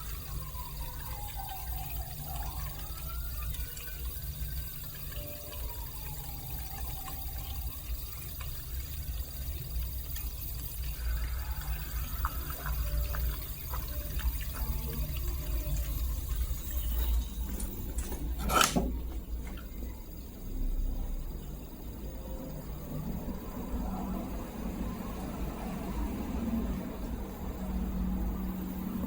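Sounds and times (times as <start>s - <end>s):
dishwasher humming: 0.0s - 29.0s
water moving inside dishwasher: 8.5s - 20.2s.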